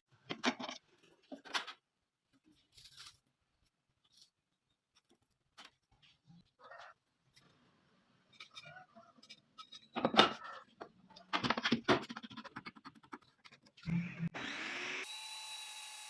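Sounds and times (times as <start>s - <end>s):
power tool running: 13.8s - 16.0s.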